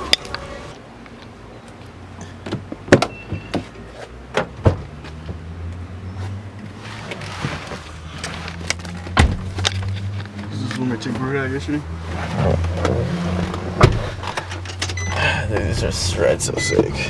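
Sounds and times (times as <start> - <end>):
sharp clunks and knocks: 9.1 - 9.9.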